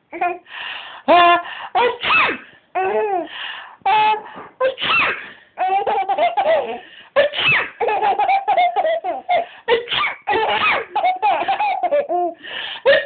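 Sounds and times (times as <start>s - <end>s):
baby laughing: 3.9s - 4.3s, 5.6s - 12.4s.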